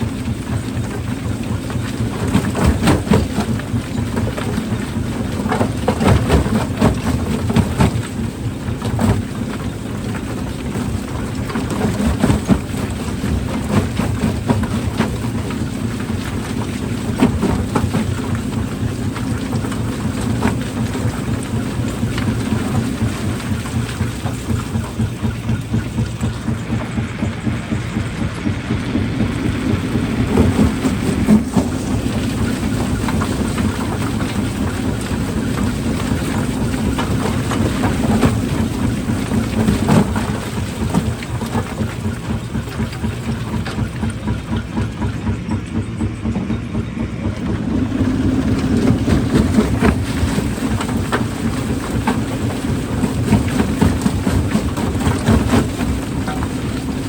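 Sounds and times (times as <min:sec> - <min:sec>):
rock crusher machine drone: 0:00.0 - 0:57.0.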